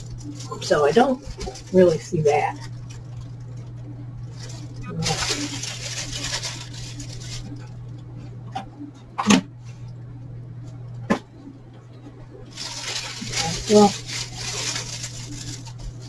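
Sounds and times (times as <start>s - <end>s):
packaging rustling: 0.0s - 8.0s, 12.5s - 16.0s
low electrical hum: 0.0s - 16.0s.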